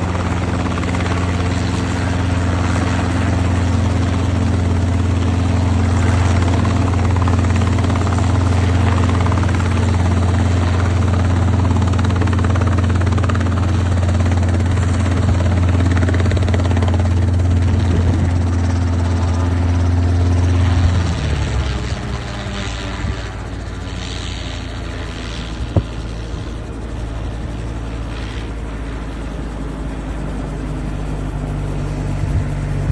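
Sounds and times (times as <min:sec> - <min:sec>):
helicopter engine and rotor: 0:00.0 - 0:32.9.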